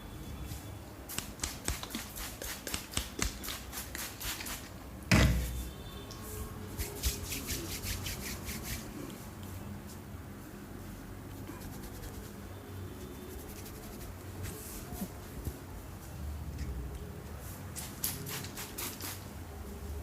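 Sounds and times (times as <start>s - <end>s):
loud thump: 5.1s - 5.6s.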